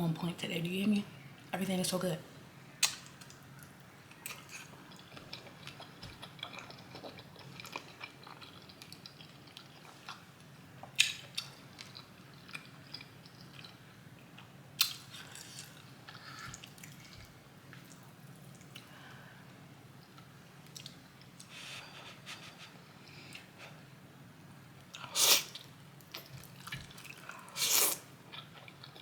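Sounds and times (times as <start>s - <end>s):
person chewing food: 4.1s - 18.9s, 24.9s - 29.0s.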